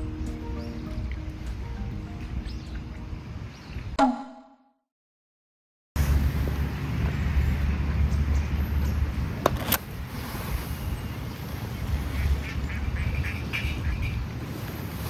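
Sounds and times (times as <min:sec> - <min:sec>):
wind rumble on microphone: 0:00.0 - 0:04.0, 0:06.0 - 0:15.0
ducks quacking: 0:12.0 - 0:14.3.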